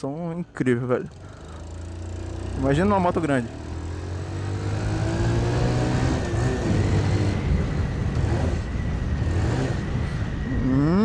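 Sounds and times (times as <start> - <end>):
motorcycle engine running: 0.4 - 11.0.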